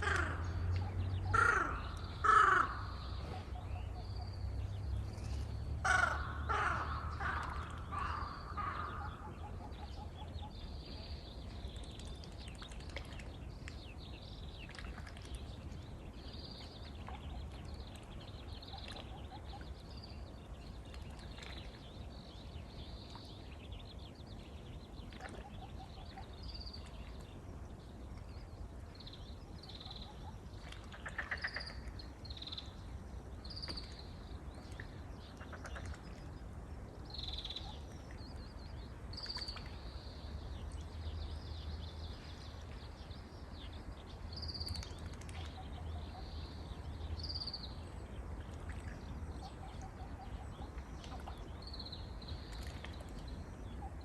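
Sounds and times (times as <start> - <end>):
low steady rumble: 0.0 - 54.0
crow cawing: 1.3 - 3.0, 5.8 - 9.2
small birds chirping: 37.1 - 54.0.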